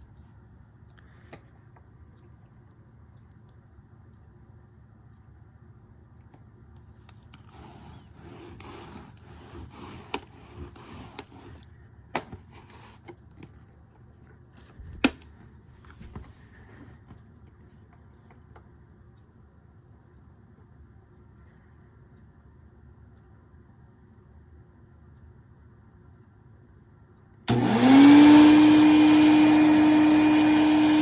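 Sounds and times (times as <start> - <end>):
handling rubbing and scraping: 6.8 - 13.5.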